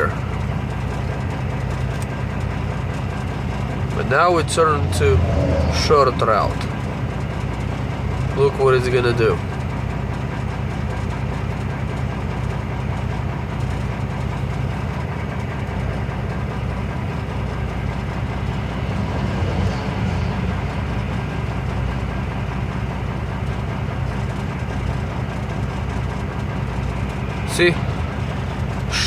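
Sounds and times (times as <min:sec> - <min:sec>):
truck engine running: 0:00.0 - 0:29.0.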